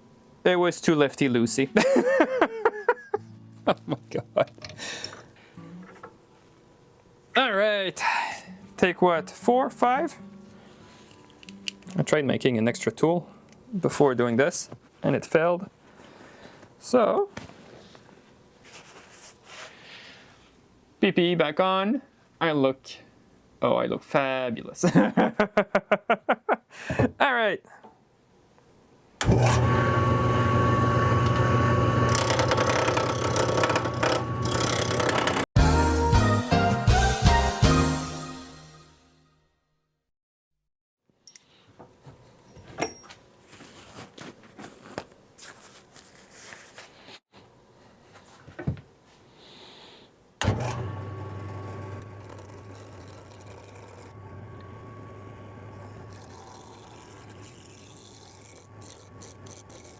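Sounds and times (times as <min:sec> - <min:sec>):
lathe motor humming and whining: 0:29.2 - 0:35.4, 0:50.4 - 0:59.9
gouge cutting spinning wood: 0:29.2 - 0:35.5, 0:50.4 - 0:59.9.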